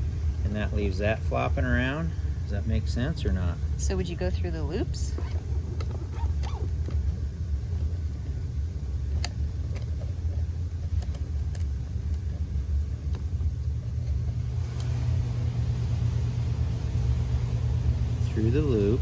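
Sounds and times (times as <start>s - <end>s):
furnace low rumble: 0.0s - 19.0s
cables clicking and rattling: 2.6s - 19.0s.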